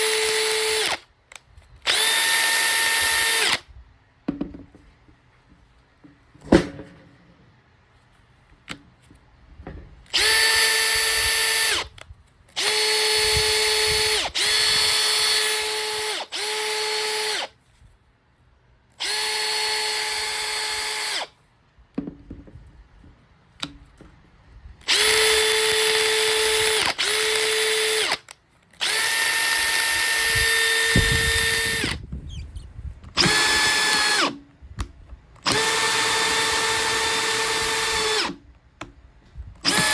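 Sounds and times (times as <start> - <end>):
cordless drill whirring: 0.0 - 1.1, 1.7 - 3.7, 10.0 - 17.6, 19.0 - 21.4, 24.8 - 34.4, 35.4 - 38.4, 39.6 - 39.9.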